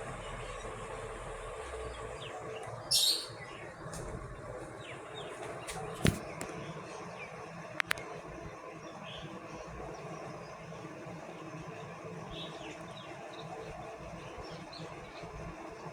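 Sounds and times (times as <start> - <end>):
ceiling fan hum and whoosh: 0.0 - 15.9.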